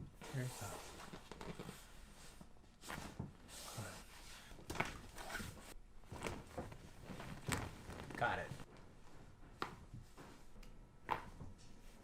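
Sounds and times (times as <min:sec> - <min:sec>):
soft knocks and rustles: 0:04.5 - 0:12.0.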